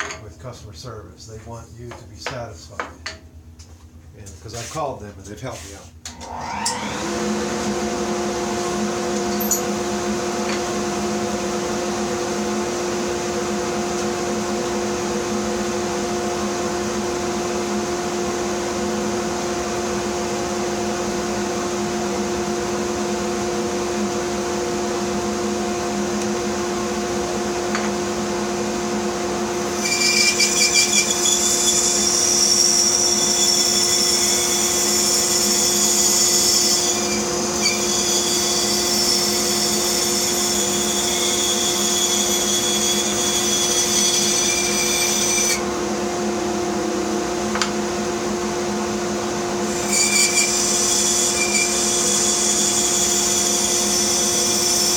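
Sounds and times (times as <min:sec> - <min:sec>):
bandsaw humming: 0:05.6 - 0:12.1, 0:25.0 - 0:46.2, 0:49.4 - 0:54.9
bandsaw cutting wood: 0:06.1 - 0:07.8, 0:29.5 - 0:45.6, 0:49.6 - 0:54.9.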